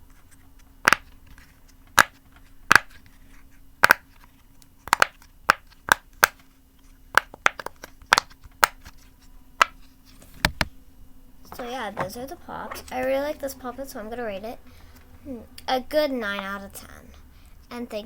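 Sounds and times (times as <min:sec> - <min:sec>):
pop-it fidget toy bubbles popping: 0:04.9 - 0:06.4, 0:07.1 - 0:08.8.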